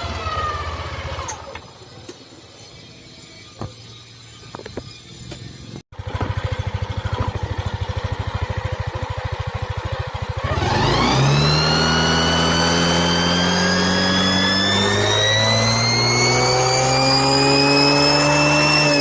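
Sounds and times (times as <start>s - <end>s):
scooter engine idling: 0.0s - 2.5s, 3.7s - 11.4s
jet-like whine rising in pitch: 10.6s - 19.0s.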